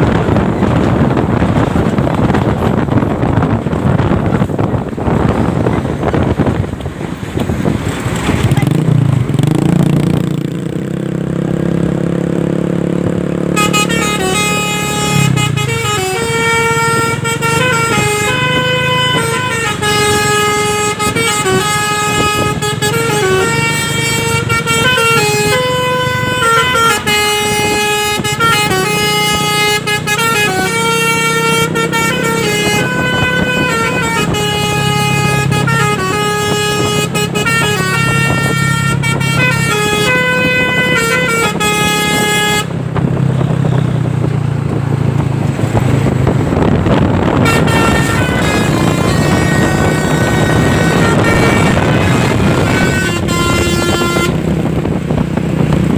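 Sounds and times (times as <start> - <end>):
truck engine running: 0.0 - 55.9
multi-tone air horn melody: 13.5 - 43.5, 46.9 - 54.8.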